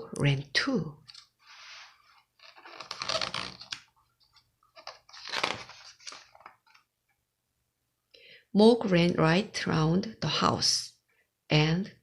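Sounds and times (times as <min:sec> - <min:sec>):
paper pages rustling: 0:01.1 - 0:06.9.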